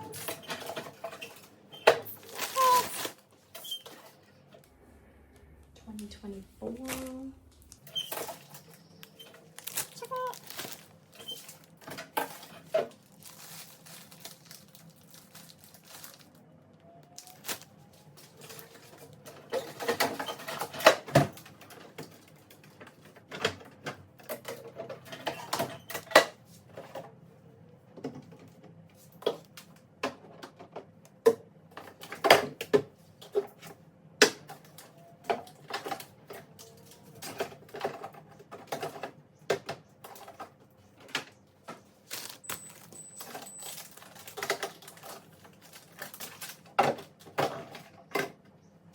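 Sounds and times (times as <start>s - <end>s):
jars and containers clattering: 0.0s - 3.2s, 7.8s - 14.6s.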